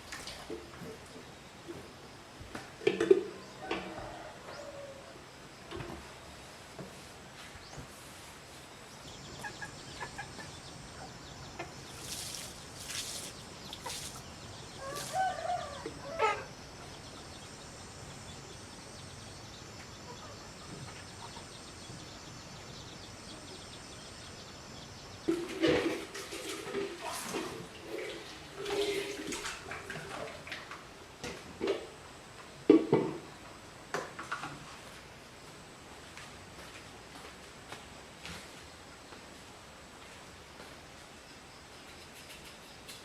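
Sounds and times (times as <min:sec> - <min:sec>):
chicken clucking: 0:09.2 - 0:12.3, 0:13.6 - 0:14.2.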